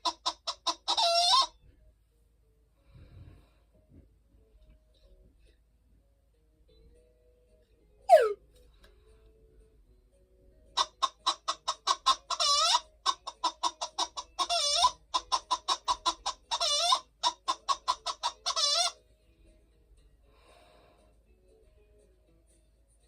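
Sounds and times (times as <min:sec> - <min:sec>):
hen cackling: 0:00.0 - 0:01.6, 0:08.1 - 0:08.4, 0:10.8 - 0:19.0.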